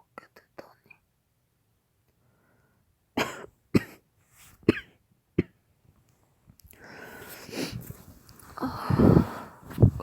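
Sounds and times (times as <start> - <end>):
woman coughing hard: 3.2 - 4.0, 4.6 - 5.6.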